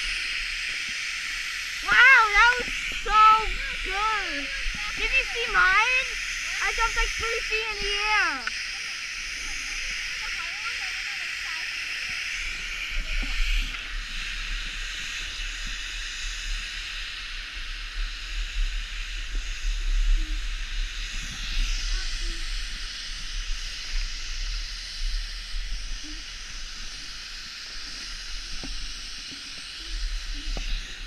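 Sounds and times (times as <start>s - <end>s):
steady high hiss: 0.0s - 31.0s
wind buffeting microphone: 1.8s - 8.7s.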